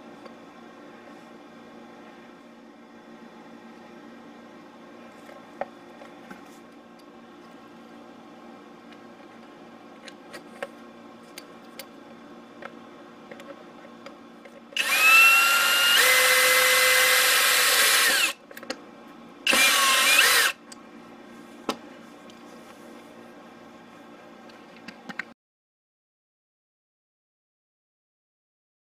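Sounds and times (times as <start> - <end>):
power drill whining: 14.8 - 18.4, 19.5 - 20.6.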